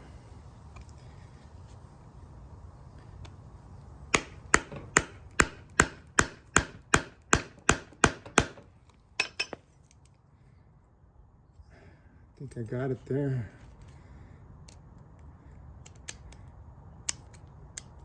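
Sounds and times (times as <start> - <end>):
hammer striking metal: 4.2 - 8.6.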